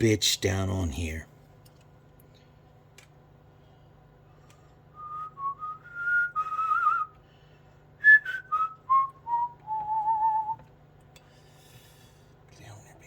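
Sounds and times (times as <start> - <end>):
man whistling a tune: 5.0 - 7.2, 8.0 - 10.6.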